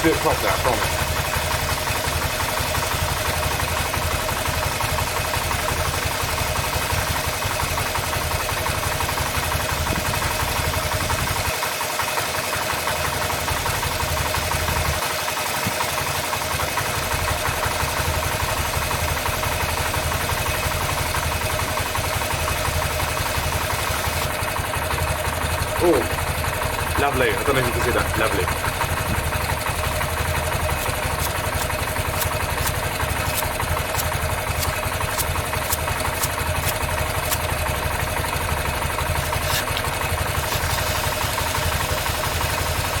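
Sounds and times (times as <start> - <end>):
motorcycle engine idling: 0.0 - 43.0.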